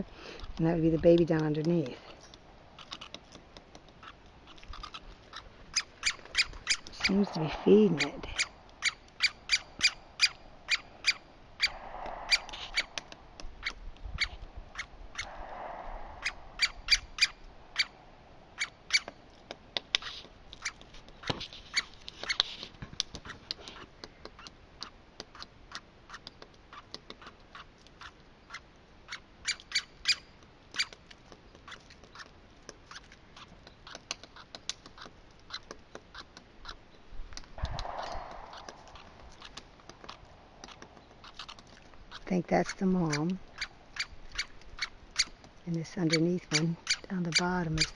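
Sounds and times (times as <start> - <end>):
woodpecker tapping: 0.0 - 7.3, 26.1 - 47.9.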